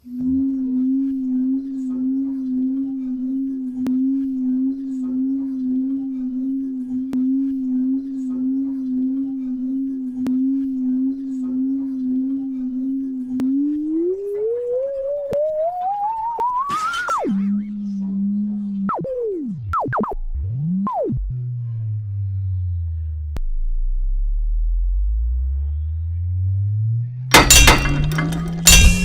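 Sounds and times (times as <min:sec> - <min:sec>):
cartoon whistle tone: 0:14.7 - 0:17.3.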